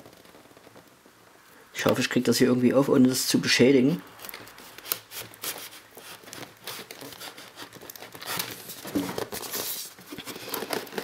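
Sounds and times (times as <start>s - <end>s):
packaging crinkling and tearing: 4.0s - 11.0s.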